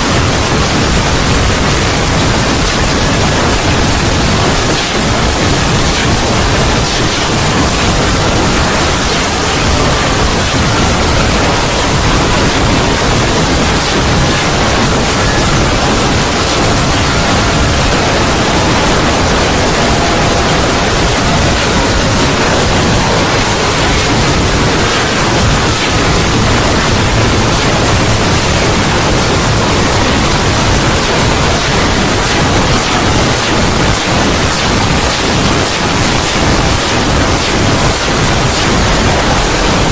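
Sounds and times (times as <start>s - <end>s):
loud rushing noise: 0.0s - 39.9s.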